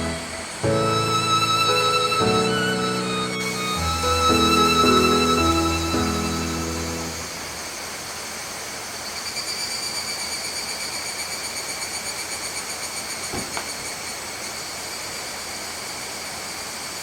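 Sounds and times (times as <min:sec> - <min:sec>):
violin music: 0:00.0 - 0:07.6
cicadas droning: 0:00.0 - 0:17.0.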